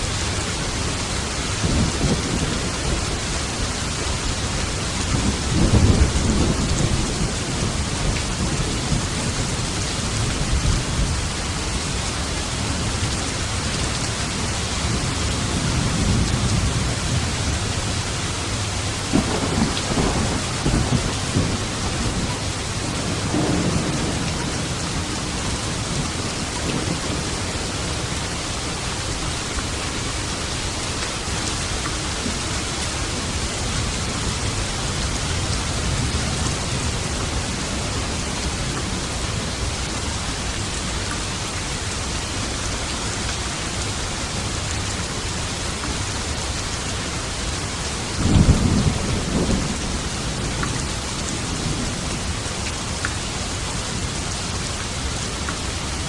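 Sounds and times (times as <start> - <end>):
heavy rain: 0.0 - 56.0
thunder rumbles: 4.5 - 11.3, 18.7 - 28.1, 48.1 - 52.4.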